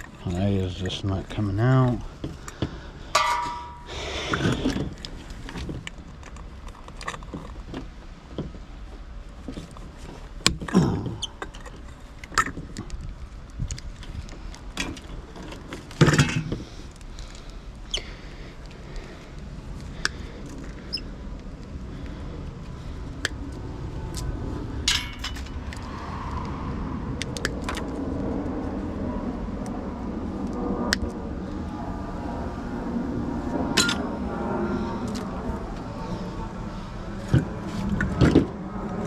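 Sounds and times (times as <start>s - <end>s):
metal tools clinking and scraping: 3.1s - 3.9s, 24.9s - 25.6s, 33.8s - 34.0s.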